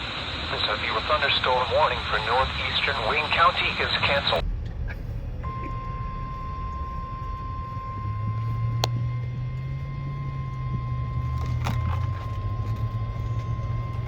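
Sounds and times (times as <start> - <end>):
low steady rumble: 0.0 - 14.0
high-pitched alarm tone: 5.4 - 14.0.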